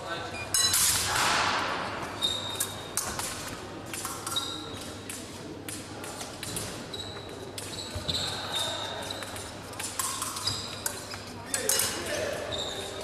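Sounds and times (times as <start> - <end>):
fencers' feet tapping and stamping: 2.9 - 11.8.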